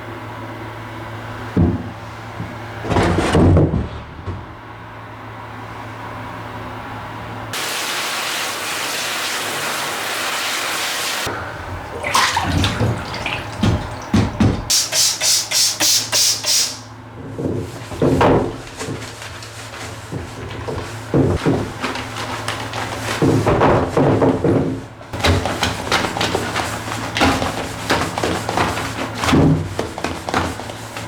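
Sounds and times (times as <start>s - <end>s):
water running from tap: 7.6s - 16.9s
scrubbing strokes: 11.2s - 16.9s, 18.6s - 23.5s, 25.1s - 31.0s
handling knocks: 11.3s - 14.7s, 17.2s - 31.0s.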